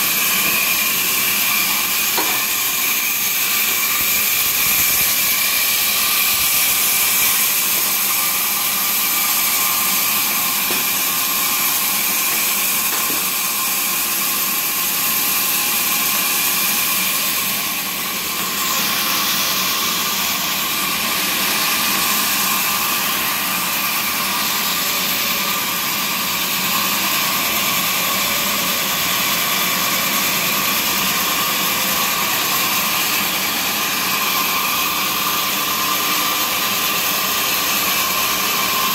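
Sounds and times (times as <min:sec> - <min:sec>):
sawmill machinery whining: 0:00.0 - 0:38.9.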